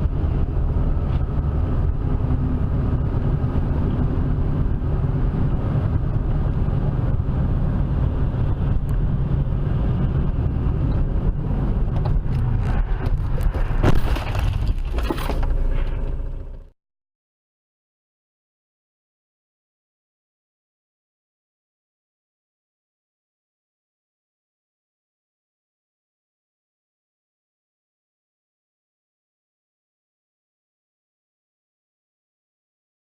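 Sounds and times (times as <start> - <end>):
car driving rumble: 0.0 - 16.7.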